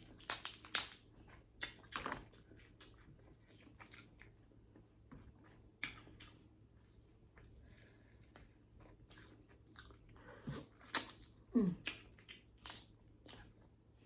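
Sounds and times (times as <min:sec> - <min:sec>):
chewing and wet mouth clicks: 0:05.8 - 0:06.4.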